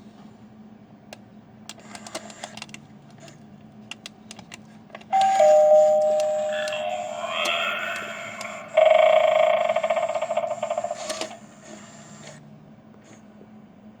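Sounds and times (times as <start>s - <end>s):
spooky electronic warble: 5.2s - 11.6s.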